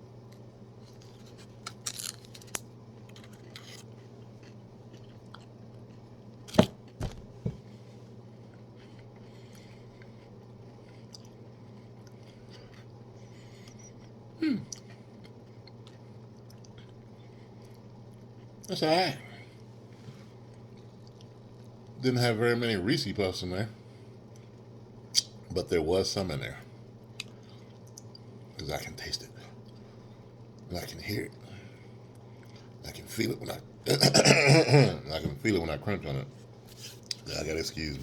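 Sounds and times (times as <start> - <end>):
steady low hum: 0.0 - 38.0
chewing and crunching: 0.3 - 7.2, 8.4 - 18.7, 20.4 - 22.0.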